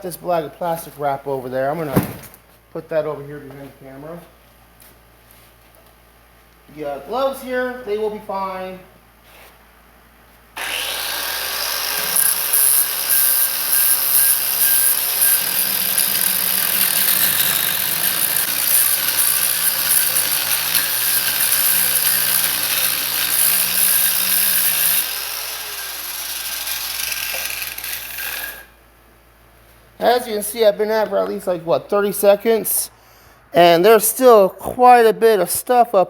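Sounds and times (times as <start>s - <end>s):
angle grinder grinding metal: 10.6s - 28.8s.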